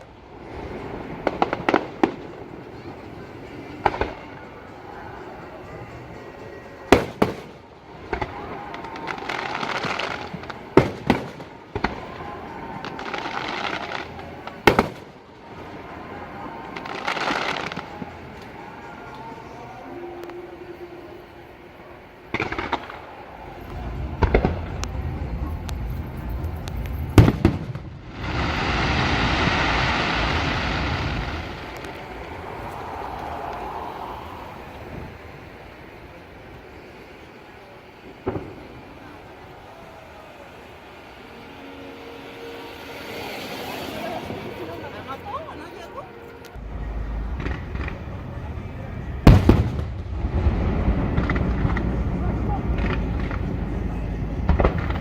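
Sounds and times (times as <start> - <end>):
fireworks bangs: 0.0 - 55.0
fireworks crackling: 0.0 - 55.0.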